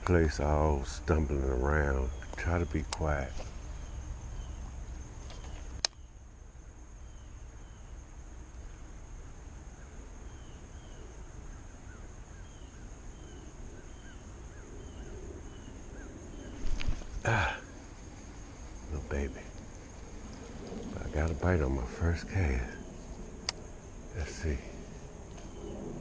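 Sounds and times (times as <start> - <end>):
falling bird chirps: 0.0 - 6.2, 11.9 - 26.0
sharp click: 5.3 - 6.0
high-pitched insect drone: 6.6 - 26.0.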